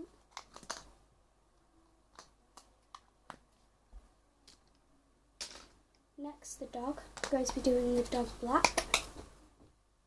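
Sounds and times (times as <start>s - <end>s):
plastic tools clicking and tapping: 2.1s - 3.4s, 7.1s - 7.7s, 8.6s - 9.3s.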